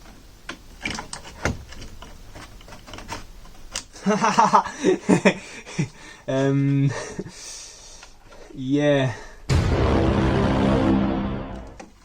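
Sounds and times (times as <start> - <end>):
small parts clicking and tapping: 0.0 - 4.0.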